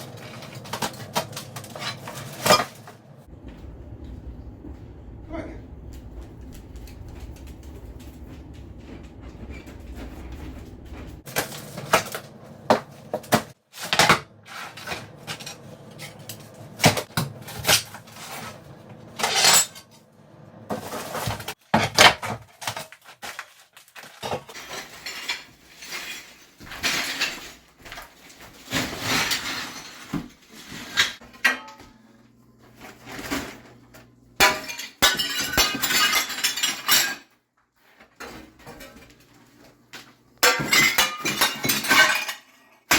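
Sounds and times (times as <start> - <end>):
shards clattering together: 0.1 - 3.0, 19.2 - 20.0, 24.1 - 27.7, 34.4 - 37.3, 40.4 - 42.9.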